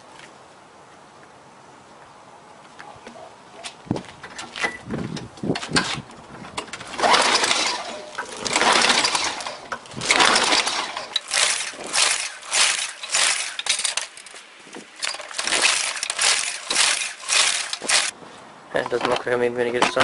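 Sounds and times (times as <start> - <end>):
recoil starter rasping whirr: 6.6 - 14.3, 15.0 - 18.1
engine cranking: 6.6 - 18.1.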